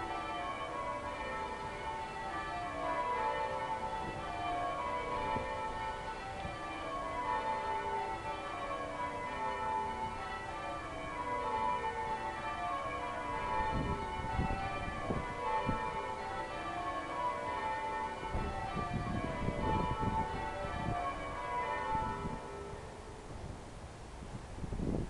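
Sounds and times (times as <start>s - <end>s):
cathedral bells ringing: 0.0s - 23.2s.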